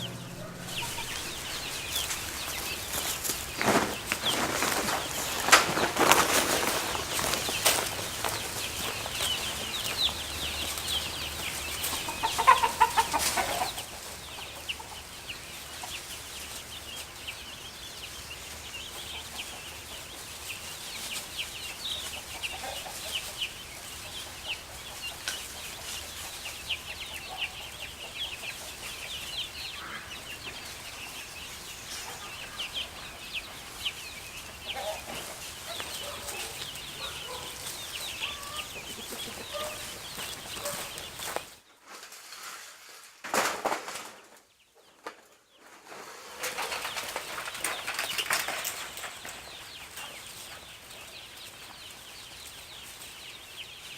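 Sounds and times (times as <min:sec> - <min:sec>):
chicks peeping and chirping: 0:00.0 - 0:53.9.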